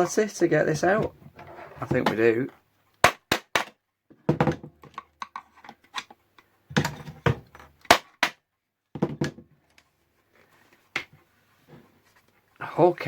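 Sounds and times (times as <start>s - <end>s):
knocking on plastic radio case: 4.3s - 4.9s.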